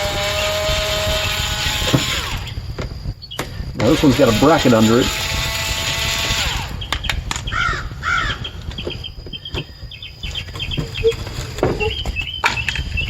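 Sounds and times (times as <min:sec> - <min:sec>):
hand tool working: 0:00.0 - 0:02.6, 0:03.8 - 0:07.2, 0:10.3 - 0:13.0
bird calling: 0:01.2 - 0:05.1, 0:06.4 - 0:13.0.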